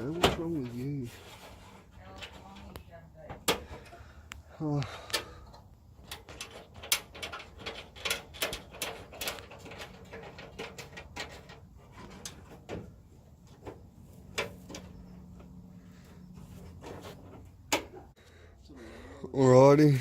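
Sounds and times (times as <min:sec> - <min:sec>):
tools clicking and knocking: 0:05.0 - 0:13.0.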